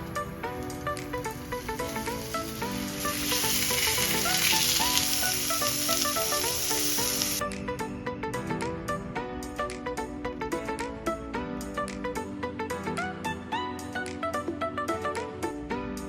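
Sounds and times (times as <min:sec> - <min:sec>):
plucked background music: 0:00.0 - 0:16.0
food sizzling in a frying pan: 0:00.3 - 0:07.4.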